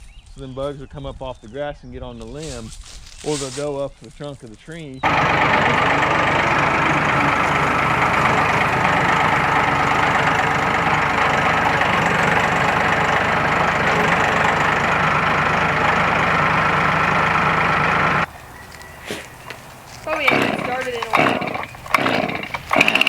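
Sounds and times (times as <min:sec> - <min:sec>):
engine idling loudly: 0:05.0 - 0:23.0.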